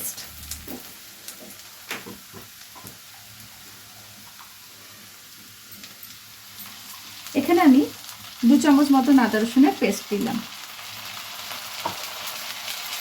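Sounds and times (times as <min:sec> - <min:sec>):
onions sizzling in oil: 0:00.0 - 0:13.0
spoon knocking pan: 0:01.4 - 0:03.1.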